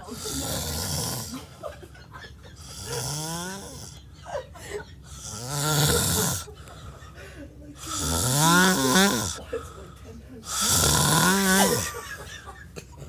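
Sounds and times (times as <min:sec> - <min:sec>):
man snoring heavily: 0:00.0 - 0:01.6, 0:02.6 - 0:04.1, 0:05.1 - 0:06.5, 0:07.8 - 0:09.5, 0:10.4 - 0:12.2.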